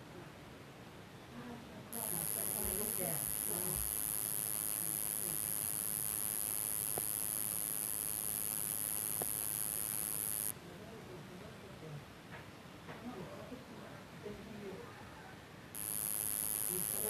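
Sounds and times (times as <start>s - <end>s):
high-pitched whine: 2.0s - 10.6s, 15.8s - 17.0s
steady hiss: 2.0s - 10.6s, 15.8s - 17.0s
faint clicks: 6.4s - 10.5s.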